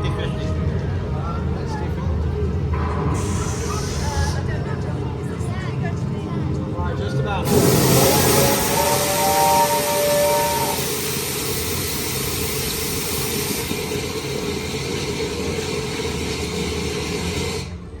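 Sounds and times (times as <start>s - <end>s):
hiss of venting steam: 3.2s - 4.4s, 7.4s - 17.7s
steam locomotive whistle: 7.5s - 12.4s.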